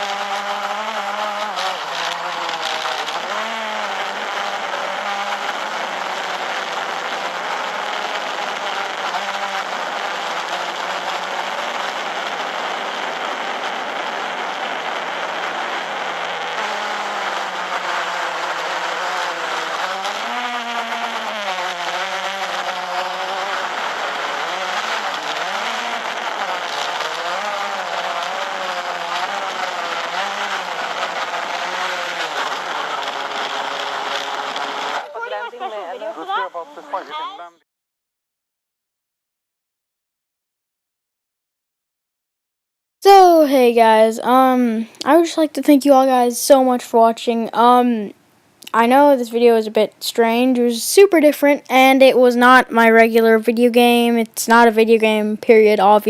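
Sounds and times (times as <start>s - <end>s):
drone propellers whining: 0.0s - 37.3s.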